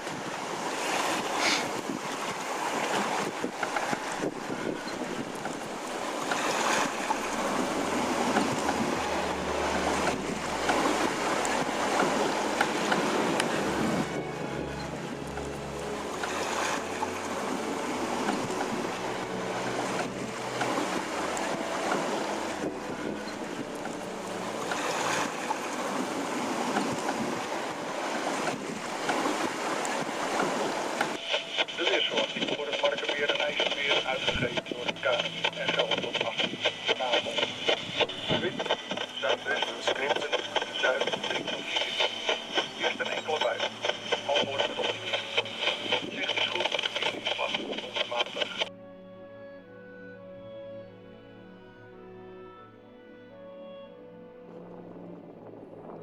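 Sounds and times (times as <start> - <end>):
wind noise: 0.0 - 15.3, 33.4 - 48.7, 54.6 - 56.0
waves against hull: 0.0 - 48.7.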